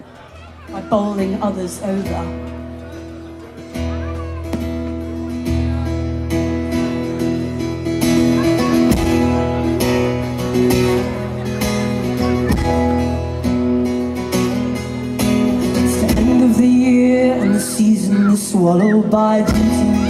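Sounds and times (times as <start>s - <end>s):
acoustic guitar strumming: 0.7s - 20.0s.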